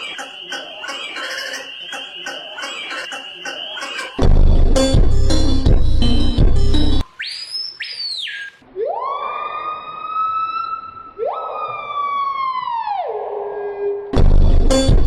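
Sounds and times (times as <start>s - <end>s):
siren-like wail: 0.0s - 4.4s, 8.6s - 14.1s.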